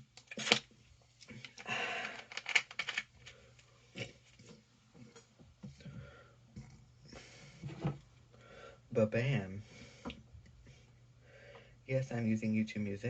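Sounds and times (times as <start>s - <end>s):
sharp handling clicks and knocks: 0.1s - 5.8s.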